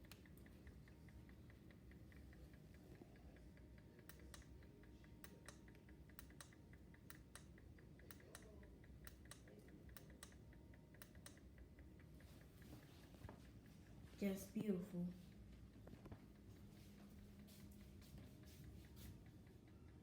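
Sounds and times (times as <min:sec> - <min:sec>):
sharp clicks: 0:00.0 - 0:13.7
pendulum clock ticking: 0:00.0 - 0:20.0.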